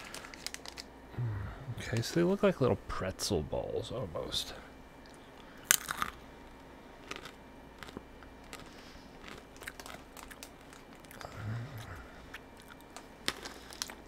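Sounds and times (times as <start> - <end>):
chewing crunchy crackers: 0.0 - 0.9, 5.0 - 14.0
short low hum: 0.9 - 14.0.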